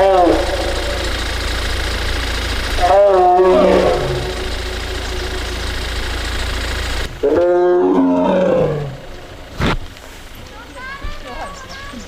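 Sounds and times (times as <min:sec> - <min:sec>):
tiger moaning: 0:00.0 - 0:01.5, 0:02.5 - 0:06.4, 0:07.1 - 0:09.6
low steady hum: 0:00.0 - 0:12.0.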